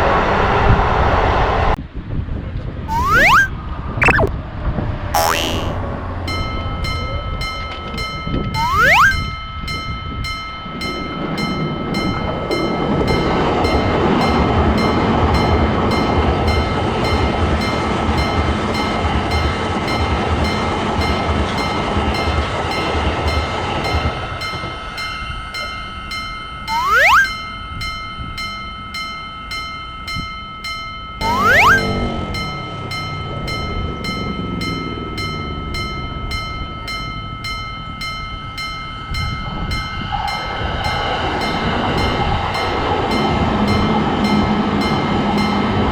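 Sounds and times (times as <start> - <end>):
short rising whistle: 2.9 - 4.3, 8.6 - 9.2, 26.7 - 27.4, 31.2 - 32.0
railroad crossing bell clanging: 27.4 - 45.9.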